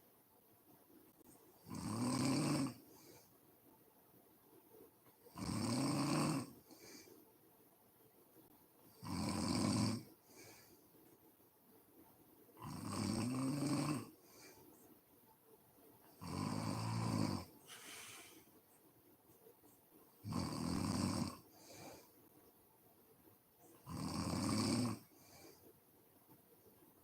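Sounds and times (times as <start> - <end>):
woman snoring: 1.6 - 3.1, 5.3 - 6.6, 9.0 - 10.6, 12.6 - 14.2, 16.2 - 18.3, 20.2 - 22.1, 23.8 - 25.4.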